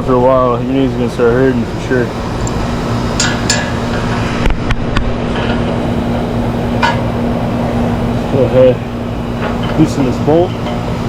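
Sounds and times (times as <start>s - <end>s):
steady mechanical hum: 0.0s - 11.0s.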